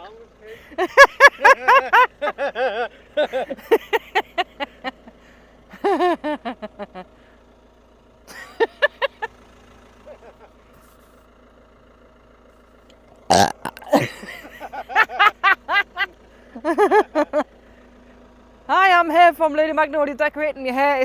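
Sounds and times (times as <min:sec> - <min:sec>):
short vocal bursts: 0:13.3 - 0:14.2
woman burping: 0:13.3 - 0:14.3.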